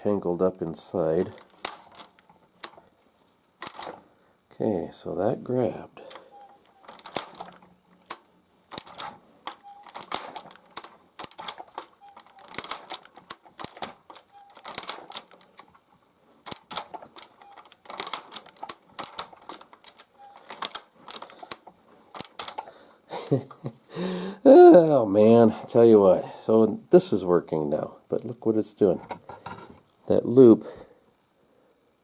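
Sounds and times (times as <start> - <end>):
leather stitcher clacking: 6.8 - 22.7.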